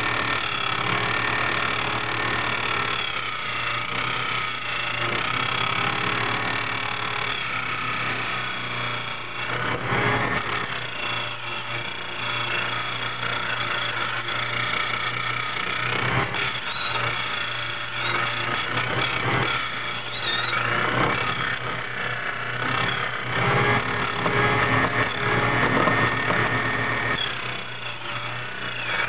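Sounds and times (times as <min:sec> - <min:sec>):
cutter grinding a key: 0:00.3 - 0:29.0
machine motor hum: 0:14.6 - 0:29.0.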